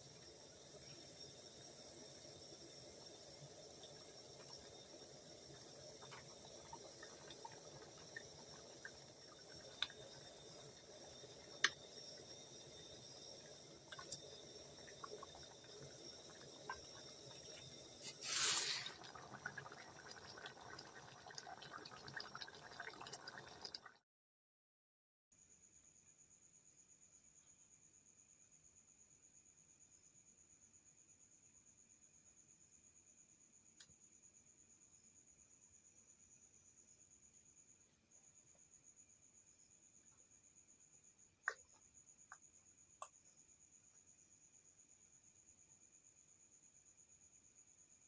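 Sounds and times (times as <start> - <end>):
stew simmering in a pot: 0.0 - 24.0
liquid splash: 18.0 - 19.5.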